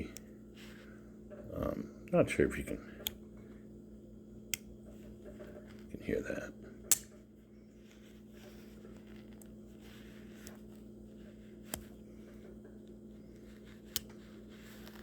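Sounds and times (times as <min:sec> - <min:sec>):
faint steady hum: 0:00.0 - 0:15.0
knife blade snapping shut: 0:06.9 - 0:07.1.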